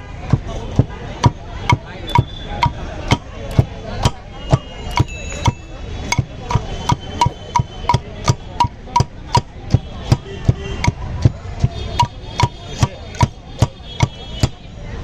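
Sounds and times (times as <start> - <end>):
rhythmic pounding with ringing tone: 0.2 - 14.7.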